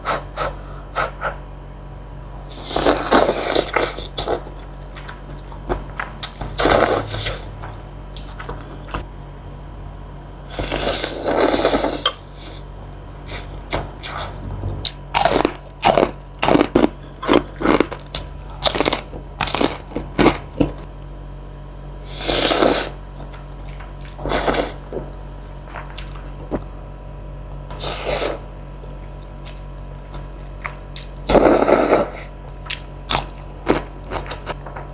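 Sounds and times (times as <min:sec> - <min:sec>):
person eating noodles: 0:02.5 - 0:05.1, 0:06.2 - 0:07.5, 0:10.5 - 0:12.7, 0:13.3 - 0:20.4, 0:22.1 - 0:23.0, 0:27.7 - 0:28.5, 0:31.0 - 0:32.3
clicky chewing and crunching: 0:32.6 - 0:34.7.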